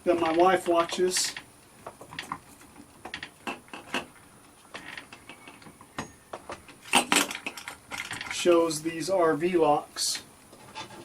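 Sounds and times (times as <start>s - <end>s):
door lock hardware clicks and rattles: 6.9s - 8.4s.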